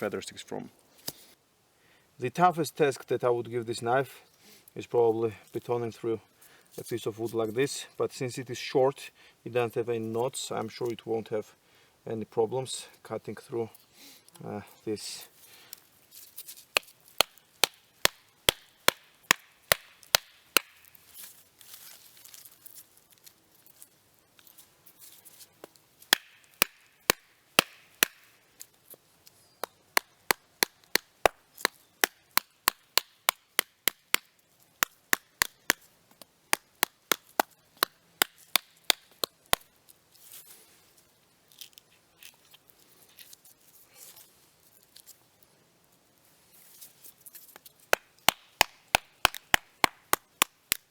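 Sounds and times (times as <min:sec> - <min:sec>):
baton knocking on knife spine: 0:26.1 - 0:28.3.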